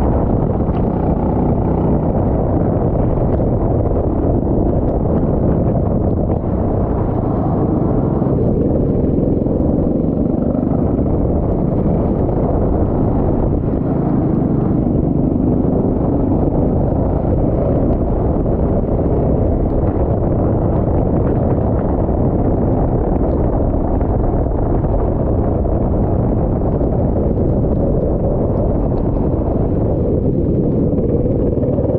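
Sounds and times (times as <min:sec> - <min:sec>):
kart engine rumbling: 0:00.0 - 0:31.9
wind buffeting microphone: 0:00.0 - 0:31.9.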